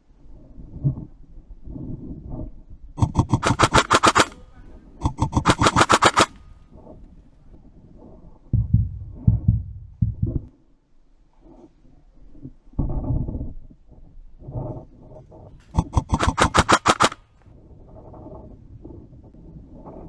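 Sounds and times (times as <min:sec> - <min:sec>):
airsoft gun automatic fire: 0:03.0 - 0:06.5, 0:15.8 - 0:17.2
low rumbling knocks: 0:08.5 - 0:10.5.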